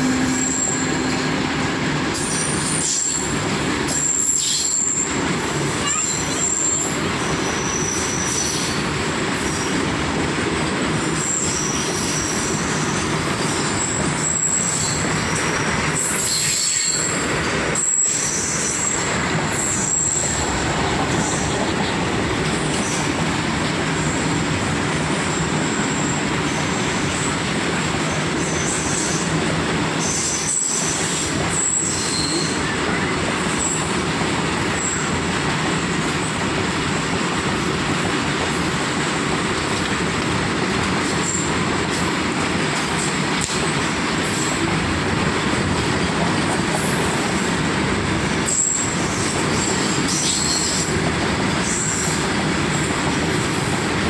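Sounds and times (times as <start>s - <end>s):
high-pitched wheel squeals: 0.0s - 8.8s, 30.0s - 32.6s
train wagons rolling on rails: 0.0s - 54.0s.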